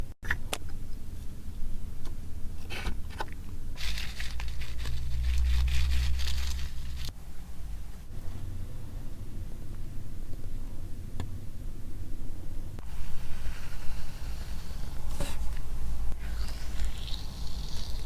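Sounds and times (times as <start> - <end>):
low rumble: 3.8 - 7.2.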